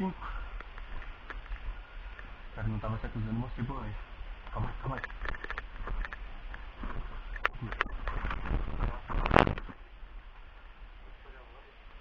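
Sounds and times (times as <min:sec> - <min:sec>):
crisp cracks: 0:04.9 - 0:09.7
sharp clicks and knocks: 0:04.9 - 0:09.8.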